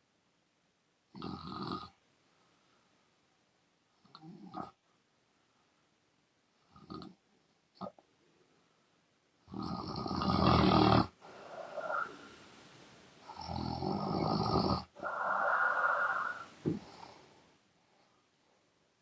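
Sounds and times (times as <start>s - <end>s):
woman snoring loudly: 9.5s - 12.3s, 13.3s - 16.8s
soft breathy exhale: 11.2s - 13.0s, 15.0s - 18.2s.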